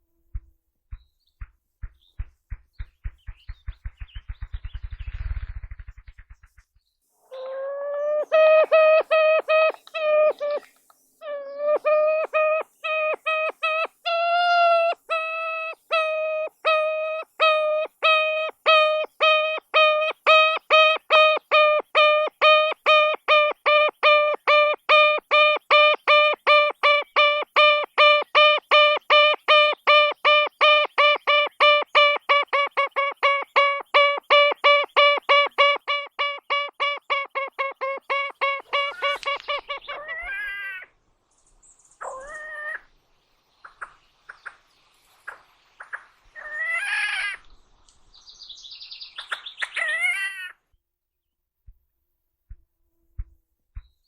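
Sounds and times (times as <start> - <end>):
grouse calling: 29.9 - 40.8.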